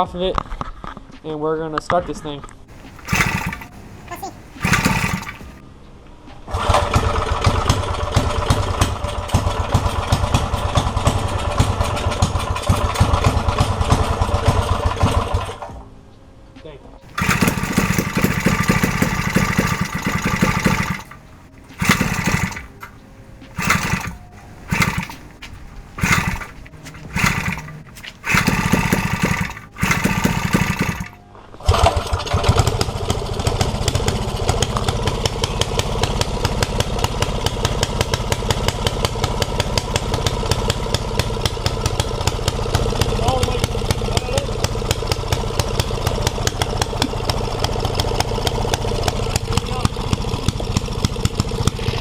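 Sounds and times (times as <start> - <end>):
small engine starting and running: 2.7 - 5.6, 17.0 - 52.0.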